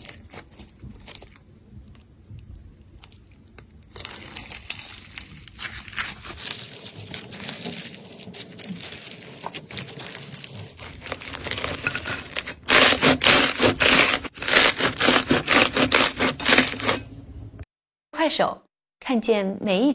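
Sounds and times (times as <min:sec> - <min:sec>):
slime crackling and popping: 0:03.0 - 0:15.1.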